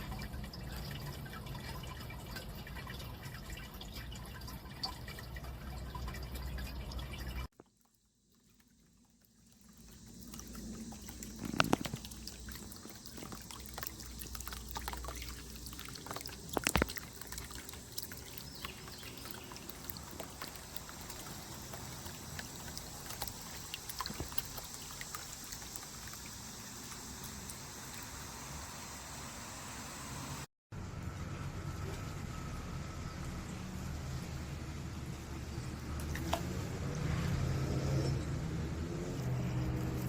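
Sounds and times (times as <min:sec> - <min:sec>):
fountain water splashing: 0:09.5 - 0:30.4.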